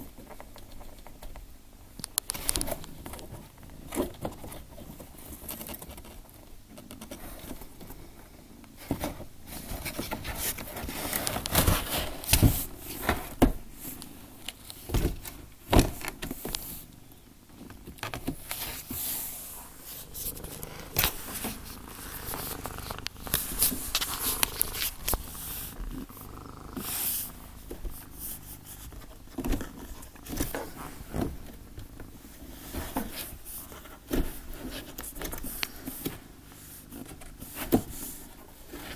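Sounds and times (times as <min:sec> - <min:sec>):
clicks and rustles: 0:00.1 - 0:08.0, 0:08.8 - 0:16.9, 0:17.5 - 0:32.1
cat purring: 0:02.3 - 0:38.9.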